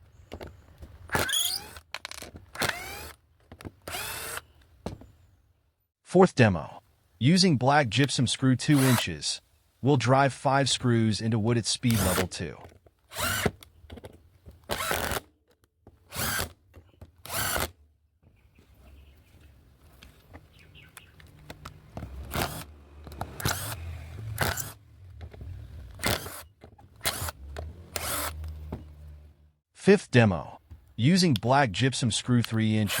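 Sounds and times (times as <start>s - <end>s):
impact driver driving screws into wood: 1.0s - 4.5s, 8.7s - 9.0s, 11.9s - 12.3s, 13.0s - 15.3s, 16.0s - 17.8s, 21.5s - 24.8s, 25.8s - 28.7s.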